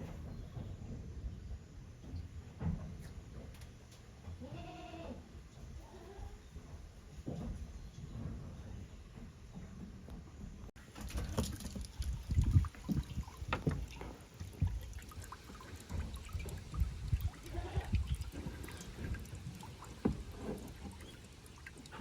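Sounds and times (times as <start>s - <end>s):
wind buffeting microphone: 11.0s - 15.0s, 15.8s - 20.4s.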